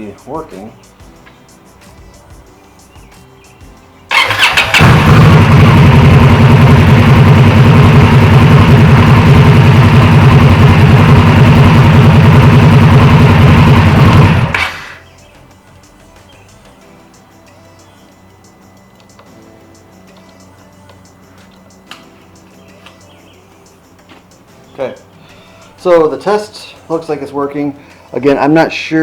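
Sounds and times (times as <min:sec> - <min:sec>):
motorcycle engine starting: 0:04.1 - 0:15.1
motorcycle engine idling: 0:04.1 - 0:15.5, 0:16.2 - 0:28.1.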